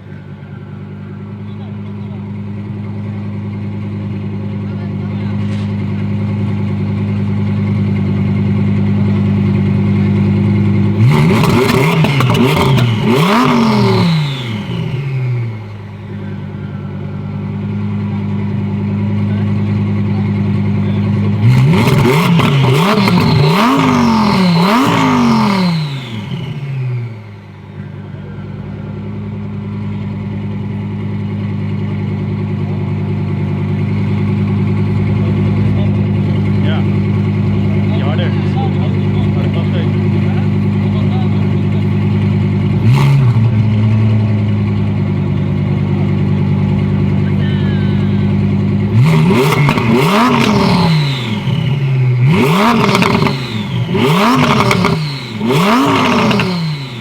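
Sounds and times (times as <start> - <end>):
engine idling: 0.0 - 57.0
car accelerating through upshifts: 10.8 - 18.4, 21.1 - 29.4, 39.0 - 45.1, 48.3 - 57.0.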